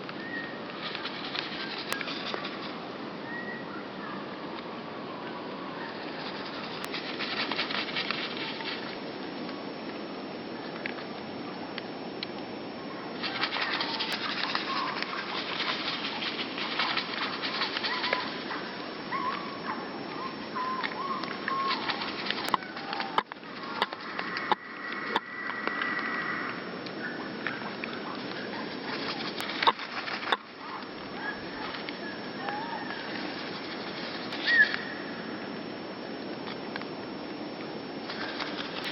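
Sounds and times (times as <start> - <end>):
steady background hiss: 0.0 - 38.9
small birds chirping: 0.1 - 4.2, 13.2 - 35.0
wing flaps: 0.6 - 2.9, 5.9 - 9.0, 13.2 - 26.2, 27.4 - 35.0, 38.0 - 38.9.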